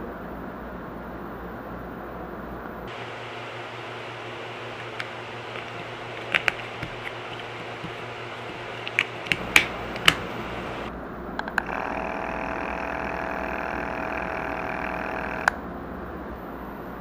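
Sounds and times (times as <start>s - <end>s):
air pump buzzing hum: 2.9s - 17.0s
handling clicks: 4.7s - 11.8s.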